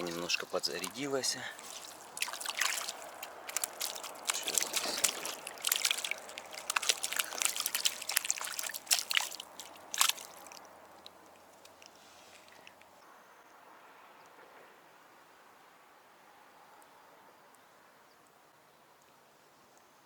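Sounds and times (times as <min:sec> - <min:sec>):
water splashing and sloshing: 0:00.0 - 0:13.0.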